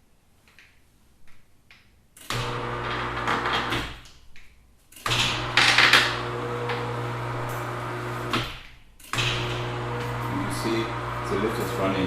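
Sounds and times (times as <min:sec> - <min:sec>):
electric motors humming: 0:02.3 - 0:03.8, 0:05.1 - 0:08.5, 0:09.1 - 0:12.0.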